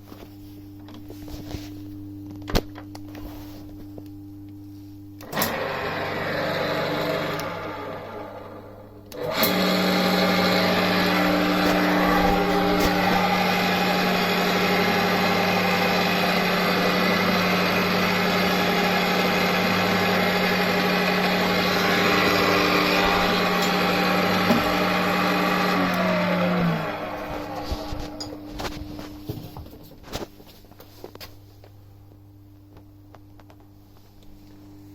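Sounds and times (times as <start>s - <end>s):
pillar drill running: 5.2s - 28.4s.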